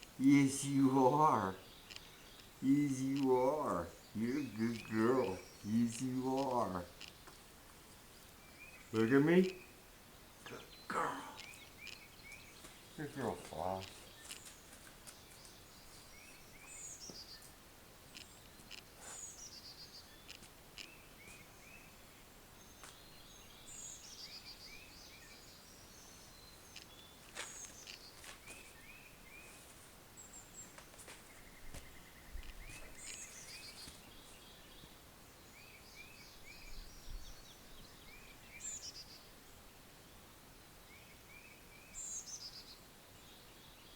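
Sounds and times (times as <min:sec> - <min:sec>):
light clicks: 0:01.8 - 0:03.3.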